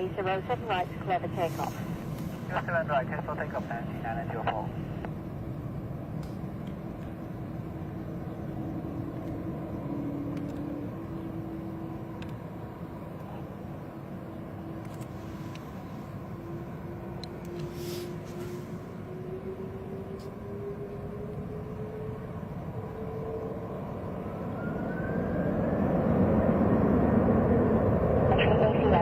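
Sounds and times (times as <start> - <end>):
jet engines rumbling in cabin: 0.0 - 29.0.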